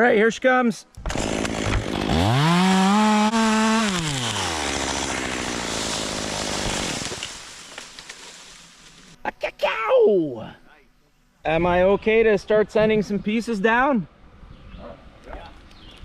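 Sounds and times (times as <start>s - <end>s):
chainsaw revving and idling: 1.0s - 9.2s.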